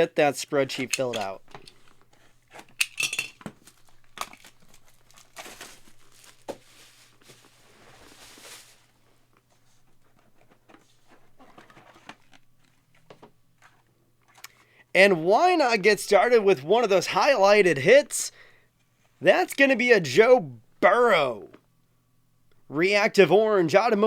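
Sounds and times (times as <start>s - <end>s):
plastic wrapping crinkling: 3.4s - 14.4s.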